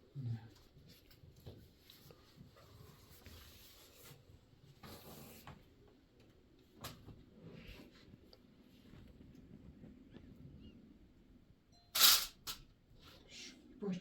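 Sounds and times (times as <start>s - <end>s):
soft rustle: 0.5s - 10.8s.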